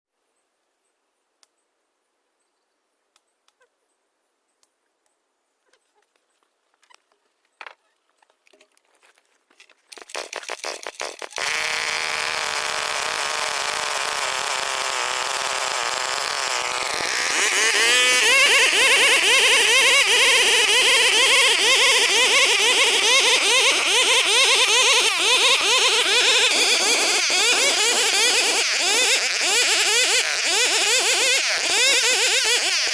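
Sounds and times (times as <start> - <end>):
chainsaw cutting wood: 9.9 - 32.9.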